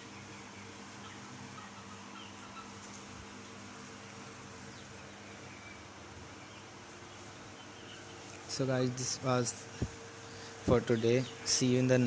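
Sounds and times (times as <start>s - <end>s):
chicken calls: 0.0s - 8.9s
low hum and hiss: 0.0s - 12.0s.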